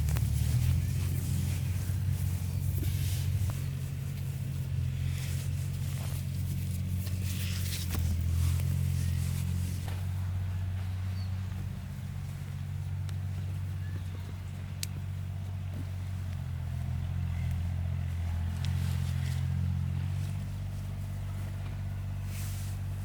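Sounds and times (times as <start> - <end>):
engine humming: 0.0 - 23.0.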